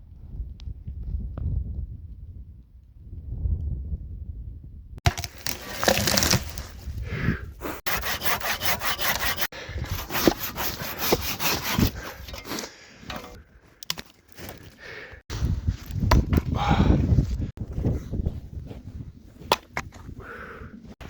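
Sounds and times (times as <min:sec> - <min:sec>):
hand saw rasping through wood: 0:07.8 - 0:12.7.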